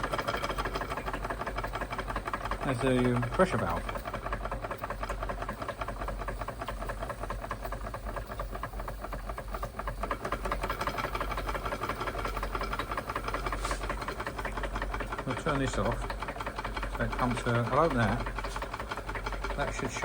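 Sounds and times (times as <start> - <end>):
model steam engine beating: 0.0 - 20.0
steam hissing: 11.5 - 14.8.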